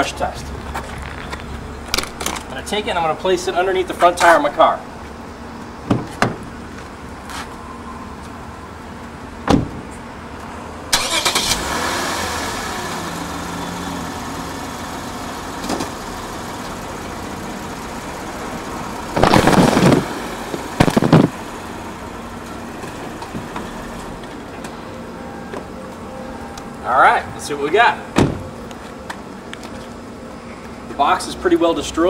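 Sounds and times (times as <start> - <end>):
thump: 9.5 - 9.8, 28.2 - 28.4
car engine starting and idling: 10.8 - 30.0
car rolling over cardboard box: 19.1 - 21.4.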